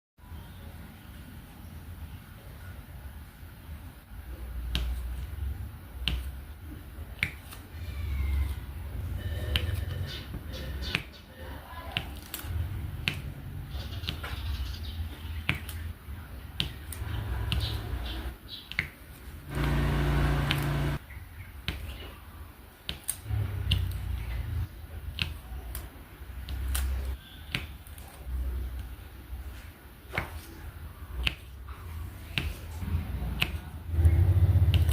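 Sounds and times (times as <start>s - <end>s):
loud steady noise: 19.5s - 21.0s.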